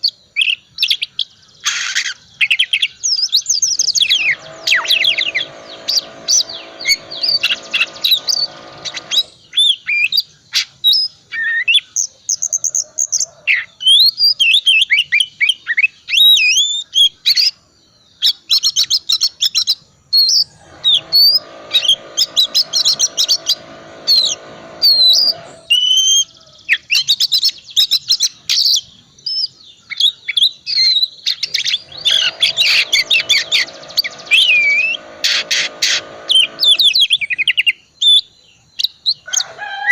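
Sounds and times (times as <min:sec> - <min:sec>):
harsh buzzing: 0:03.8 - 0:09.4, 0:20.4 - 0:25.8, 0:31.5 - 0:37.5.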